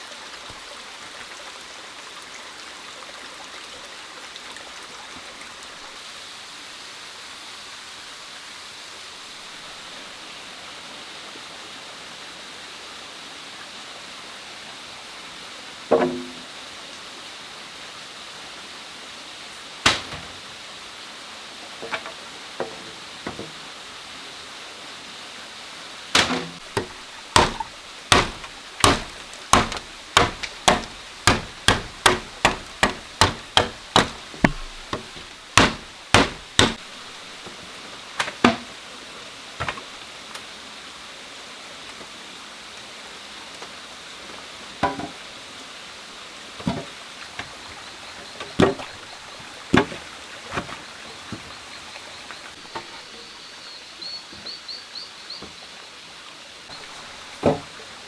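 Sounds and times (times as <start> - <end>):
tool striking wood: 15.9 - 16.4, 19.9 - 20.4, 21.8 - 23.6, 26.2 - 37.6, 38.2 - 38.7, 48.4 - 48.9.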